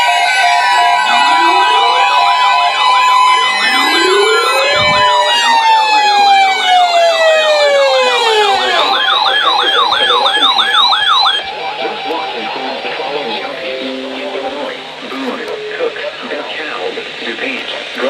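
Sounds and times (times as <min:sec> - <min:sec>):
fast yelping sirens: 0:00.0 - 0:18.0
wailing sirens: 0:00.0 - 0:18.0.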